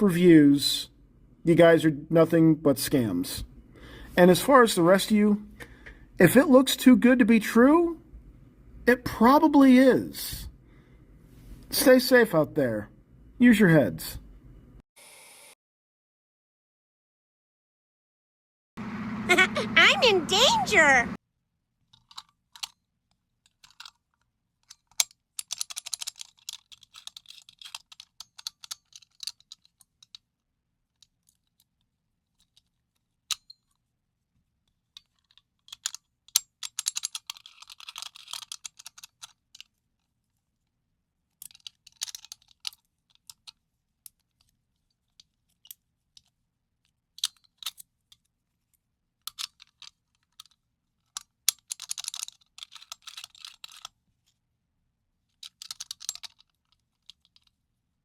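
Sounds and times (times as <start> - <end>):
padlock clicking and rattling: 21.9 - 33.9, 34.7 - 40.7, 41.3 - 48.4, 49.2 - 54.4, 55.3 - 57.6.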